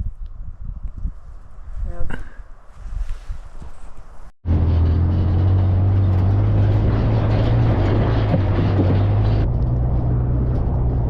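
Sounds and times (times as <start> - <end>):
vehicle engine droning: 4.4 - 11.0.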